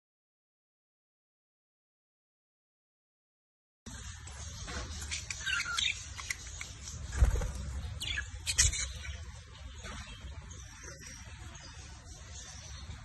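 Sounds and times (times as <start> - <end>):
finches chirping: 3.9 - 13.0.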